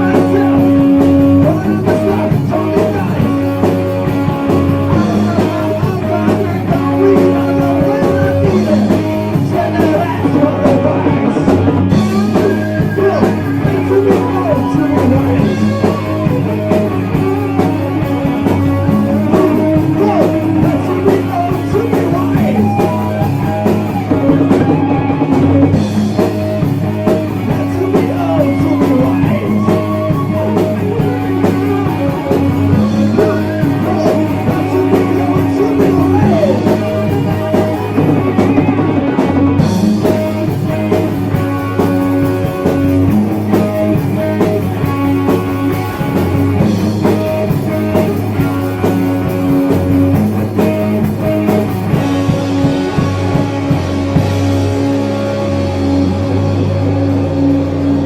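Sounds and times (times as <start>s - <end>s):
person singing: 0.0s - 39.2s
heavy metal band playing: 0.0s - 58.0s.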